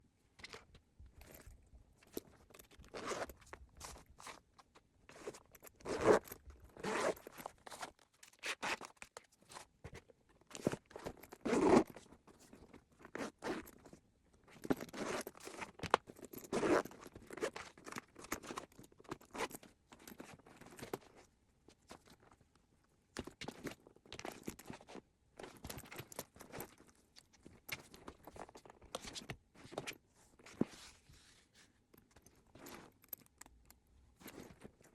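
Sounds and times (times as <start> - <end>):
fabric backpack rustling: 2.9 - 4.4, 5.1 - 8.0, 10.6 - 12.0, 27.5 - 33.0, 34.2 - 34.9.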